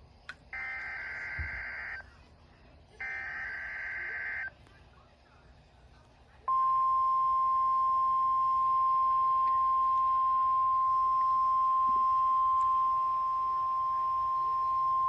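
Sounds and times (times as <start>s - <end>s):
steady alarm tone: 0.6s - 2.0s, 3.0s - 4.5s.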